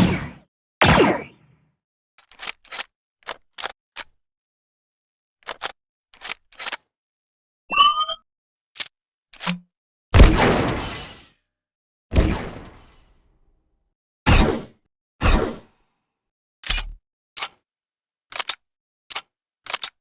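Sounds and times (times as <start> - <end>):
loud blaster shot: 0.0 - 1.4, 10.2 - 11.2, 12.1 - 13.0.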